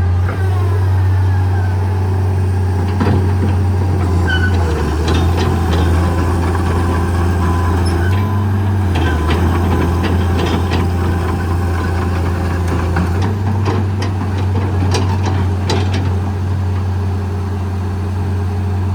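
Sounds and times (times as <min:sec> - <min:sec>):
excavator diesel engine running: 0:00.0 - 0:18.9.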